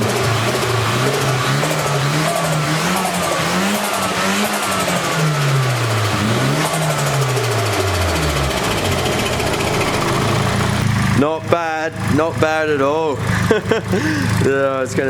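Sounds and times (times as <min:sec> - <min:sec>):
car engine revving: 0:00.0 - 0:15.0
turbo flutter: 0:05.6 - 0:11.2.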